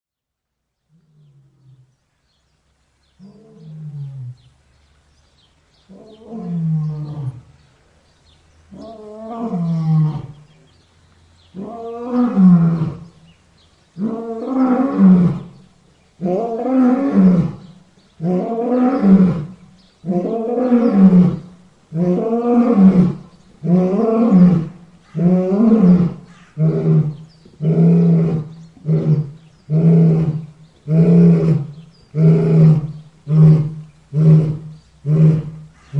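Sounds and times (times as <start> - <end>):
large animal deep calls: 5.9 - 7.6, 16.2 - 35.9.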